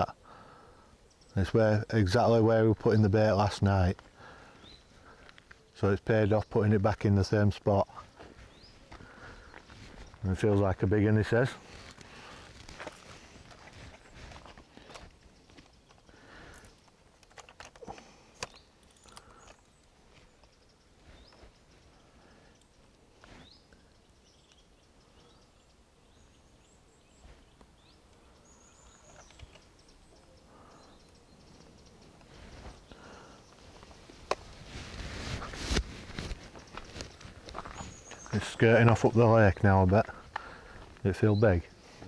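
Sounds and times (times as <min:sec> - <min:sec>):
faint bird chirps: 0:00.0 - 0:03.0, 0:04.2 - 0:06.6, 0:07.8 - 0:12.4, 0:17.8 - 0:41.9
rustling: 0:11.5 - 0:22.2, 0:32.0 - 0:38.4
small clicks and knocks: 0:14.4 - 0:20.6.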